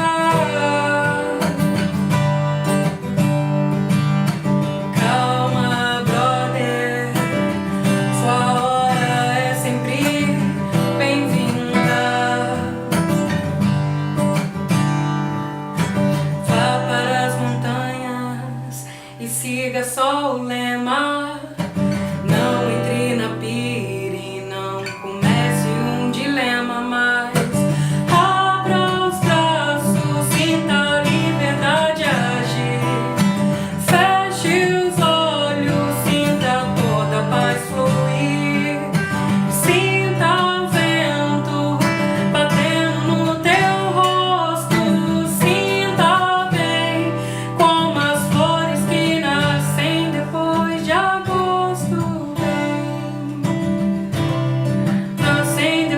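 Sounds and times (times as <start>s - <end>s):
strummed acoustic guitar: 0.0s - 55.9s
woman singing: 0.0s - 55.9s.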